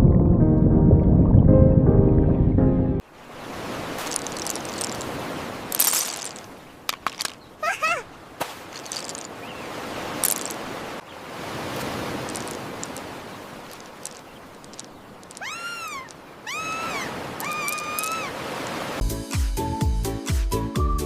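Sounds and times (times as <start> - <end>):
high meow-like animal calls: 15.4 - 18.4
rushing surf-like noise: 16.7 - 19.0
music with a beat: 19.0 - 21.0.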